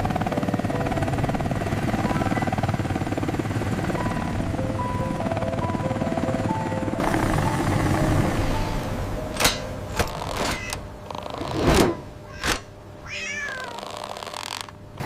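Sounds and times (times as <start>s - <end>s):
sharp clicks or knocks: 9.4s - 10.8s, 11.5s - 12.7s
cat meowing: 10.4s - 10.8s, 12.2s - 14.1s.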